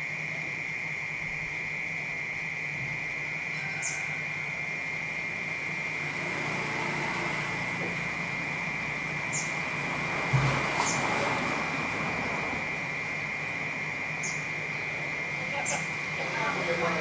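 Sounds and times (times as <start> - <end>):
cicadas droning: 0.0 - 17.0
low city hum: 0.0 - 17.0.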